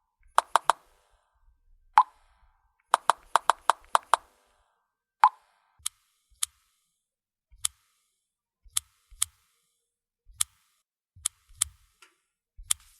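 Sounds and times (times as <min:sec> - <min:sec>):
smartphone keyboard tap clicks: 0:00.4 - 0:00.8, 0:03.0 - 0:04.3.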